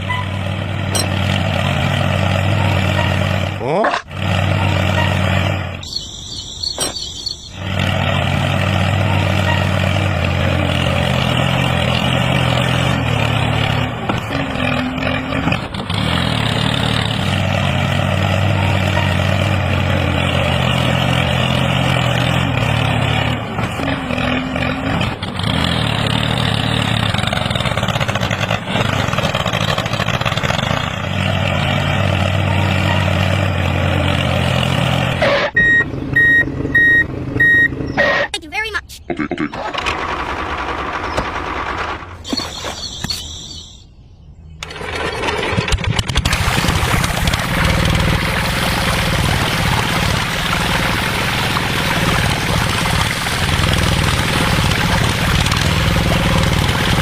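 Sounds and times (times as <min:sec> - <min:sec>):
small engine running: 0:39.6 - 0:42.3, 0:44.6 - 0:57.0.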